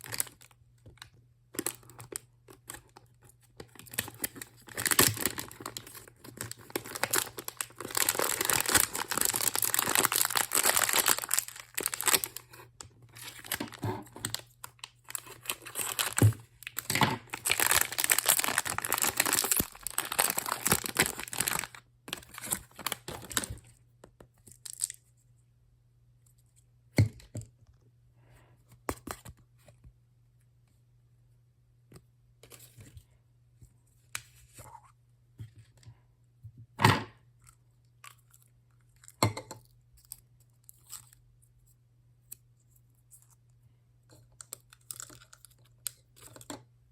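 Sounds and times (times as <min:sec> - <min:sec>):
packaging tearing and crinkling: 0:00.0 - 0:00.5, 0:03.7 - 0:23.7.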